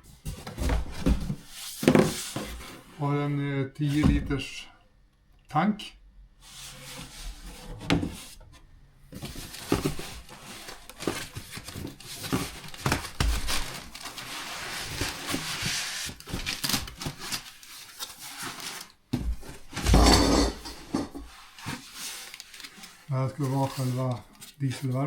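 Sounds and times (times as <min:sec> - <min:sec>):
rustling and crinkling packaging: 0:09.1 - 0:25.0.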